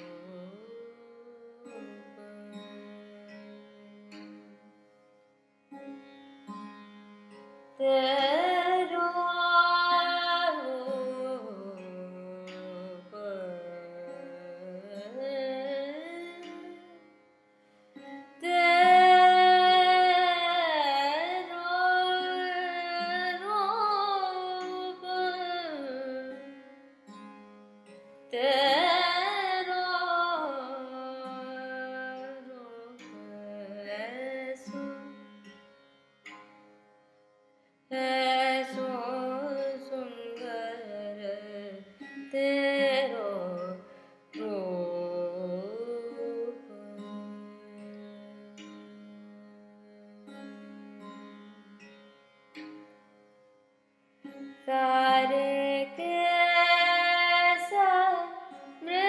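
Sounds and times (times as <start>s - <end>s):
wordless classical singing: 7.8s - 16.9s, 18.4s - 26.4s, 54.7s - 59.0s.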